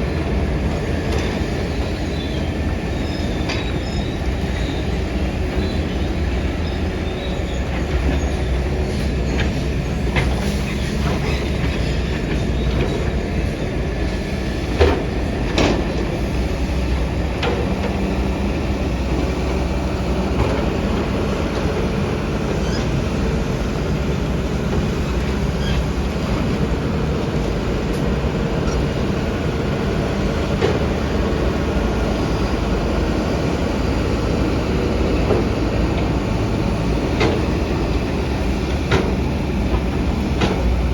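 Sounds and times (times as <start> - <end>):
diesel engine running under load: 0.0 - 40.9.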